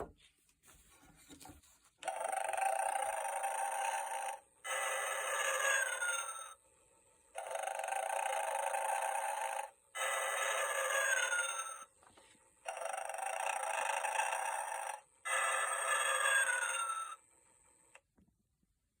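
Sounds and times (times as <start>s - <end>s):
electronic snoring toy: 2.0s - 6.6s, 7.3s - 12.0s, 12.6s - 17.3s.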